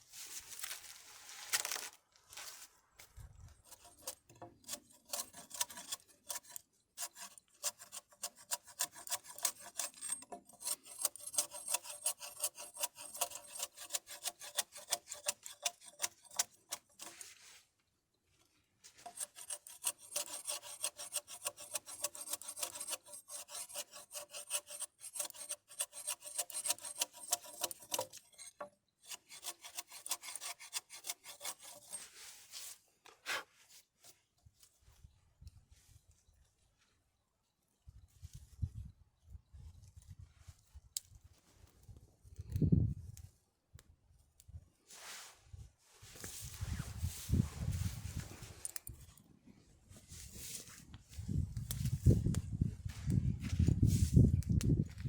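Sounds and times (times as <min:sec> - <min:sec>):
tool rasping on hard material: 0:03.7 - 0:17.3, 0:19.0 - 0:32.2.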